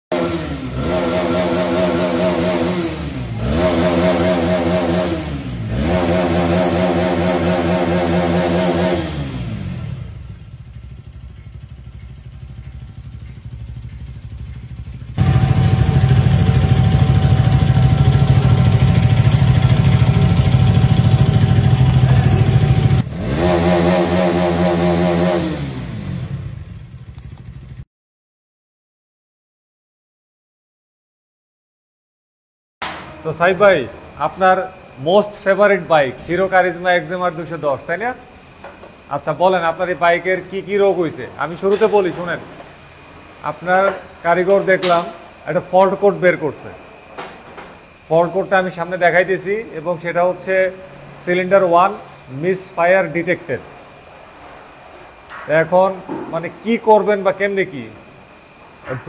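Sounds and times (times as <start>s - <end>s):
steady engine rumble: 0.1s - 24.8s
motorcycle engine revving: 0.1s - 27.8s.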